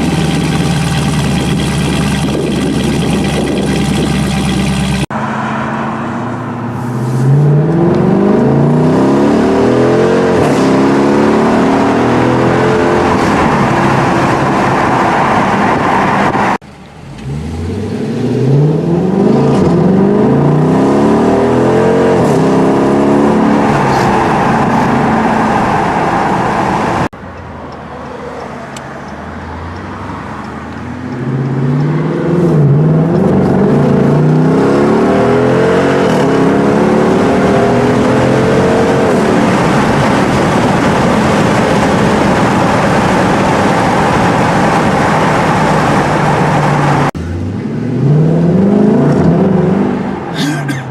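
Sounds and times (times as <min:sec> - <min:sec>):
car engine accelerating hard: 0:00.0 - 0:27.1, 0:29.4 - 0:50.9.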